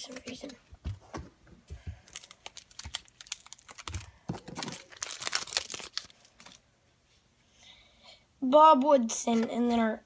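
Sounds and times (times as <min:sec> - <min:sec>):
foil wrapper crinkling and tearing: 0:02.0 - 0:06.6.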